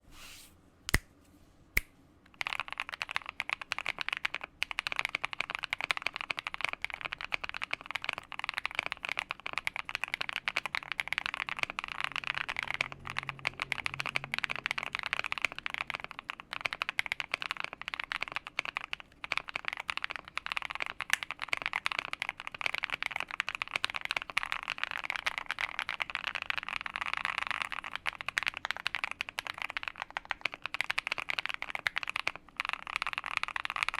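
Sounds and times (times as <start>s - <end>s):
mechanical keyboard typing: 2.3s - 33.9s.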